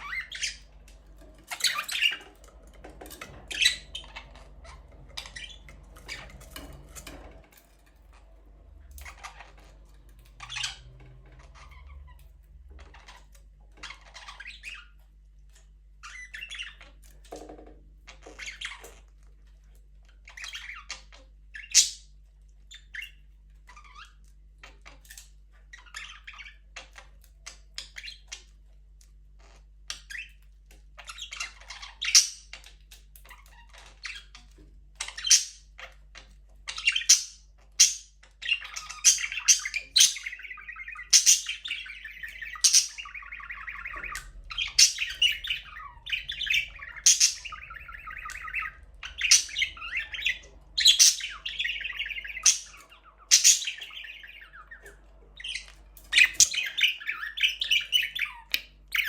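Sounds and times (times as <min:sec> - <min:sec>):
budgerigars chirping and chattering: 0:00.0 - 0:17.5, 0:18.1 - 0:28.8, 0:29.4 - 0:59.0
budgerigar squawks: 0:42.5 - 0:54.5.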